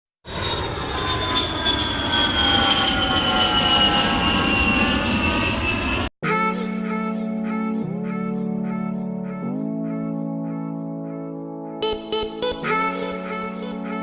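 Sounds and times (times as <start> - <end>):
rushing engine with falling whine: 0.3 - 6.1.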